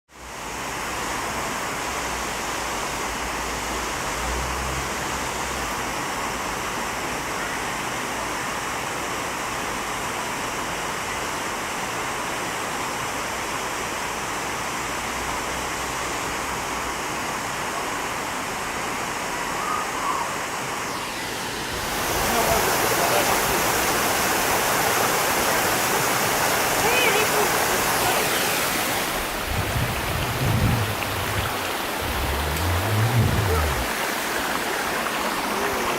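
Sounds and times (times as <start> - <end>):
waterfall rushing: 19.2 - 35.9
low rumble: 29.2 - 33.9.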